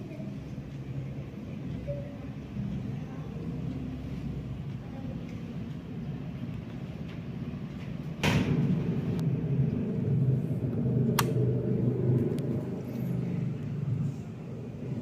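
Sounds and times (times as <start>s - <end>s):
ceiling fan rumbling: 0.0s - 15.0s
sharp click: 11.1s - 11.4s.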